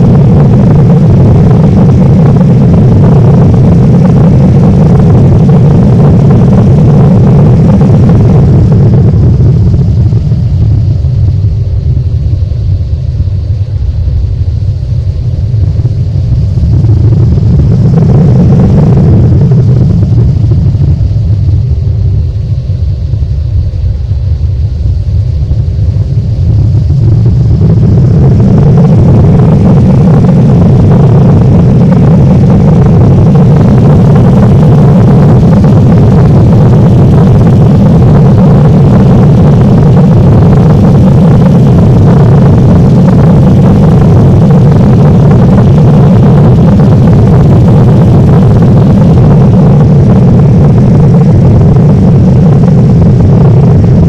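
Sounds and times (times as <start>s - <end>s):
airliner landing rumble: 0.0s - 54.0s.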